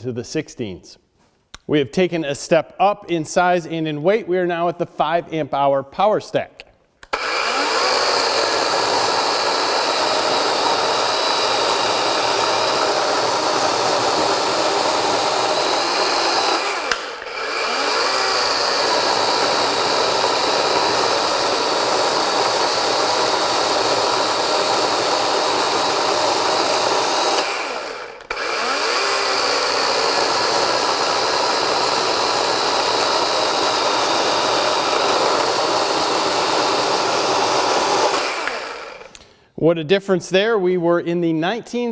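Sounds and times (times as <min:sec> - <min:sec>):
chainsaw cutting wood: 0:07.0 - 0:39.3.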